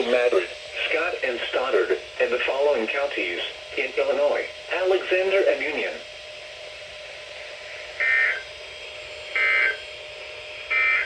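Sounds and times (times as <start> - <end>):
faint steady hum: 0.0 - 11.0
warbling data bursts: 10.7 - 11.0.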